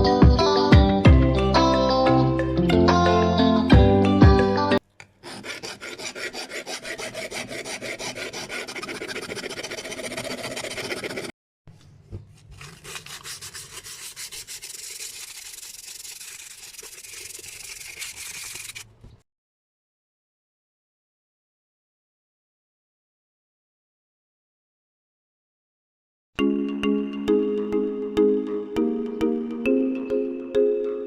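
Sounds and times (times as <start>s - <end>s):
rubbing strokes on steering wheel: 5.3s - 11.3s, 12.3s - 19.2s.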